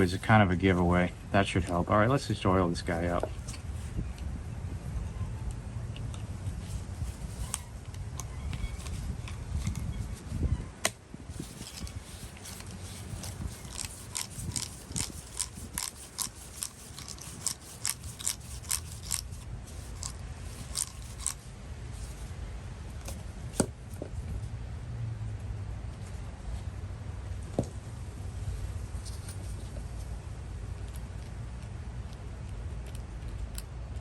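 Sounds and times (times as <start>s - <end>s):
ratchet pawl clicking: 11.5s - 21.4s.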